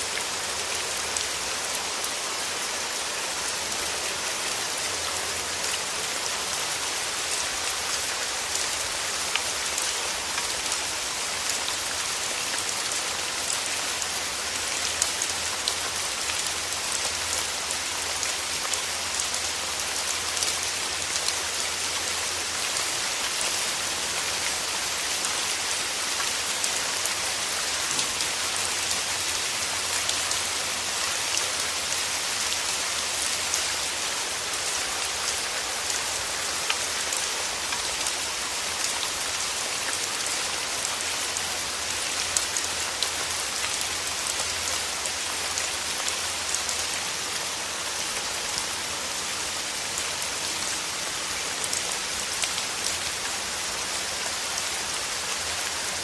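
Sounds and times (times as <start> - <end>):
steady rain falling: 0.0 - 56.0
raindrops pattering on a surface: 7.2 - 32.1.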